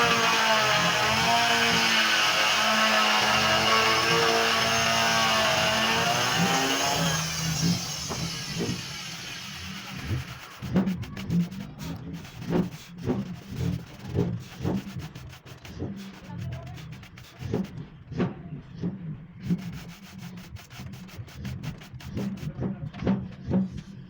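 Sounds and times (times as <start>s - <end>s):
power tool motor cutting wood: 0.0s - 17.8s, 19.4s - 22.6s
rubbing strokes: 5.4s - 17.8s, 19.4s - 22.6s.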